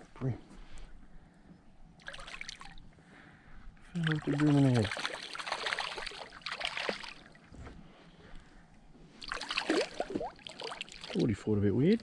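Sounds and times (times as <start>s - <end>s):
water splashing and trickling: 2.0s - 3.0s, 3.9s - 7.5s, 9.1s - 12.0s.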